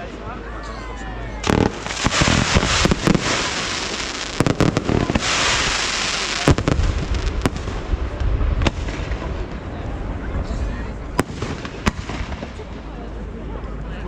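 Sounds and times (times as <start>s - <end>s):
fireworks bangs: 1.4s - 10.0s, 11.1s - 13.0s
fireworks crackling: 1.4s - 13.2s.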